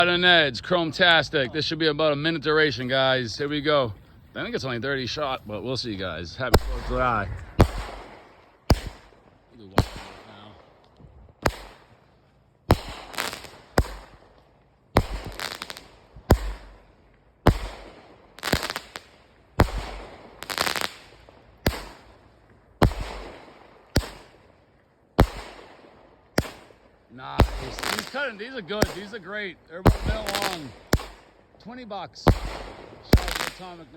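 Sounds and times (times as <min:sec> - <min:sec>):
crackle of firework stars: 0:02.4 - 0:33.9
firework shots firing: 0:06.4 - 0:12.0, 0:12.7 - 0:24.6, 0:25.2 - 0:33.9.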